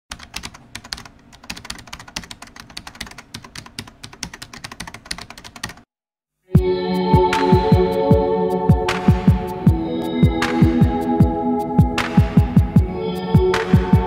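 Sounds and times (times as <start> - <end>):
rapid irregular clicks: 0.1 - 5.9.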